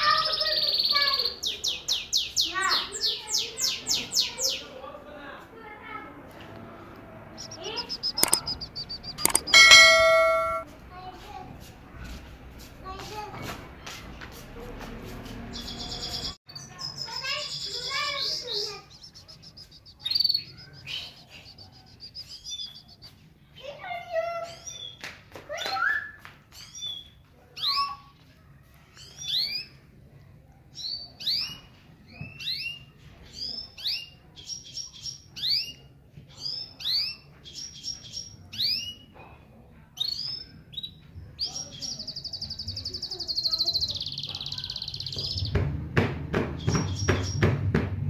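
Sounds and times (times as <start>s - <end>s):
canary singing trills: 0.0s - 4.7s, 7.3s - 10.6s, 15.5s - 23.8s, 40.0s - 45.6s.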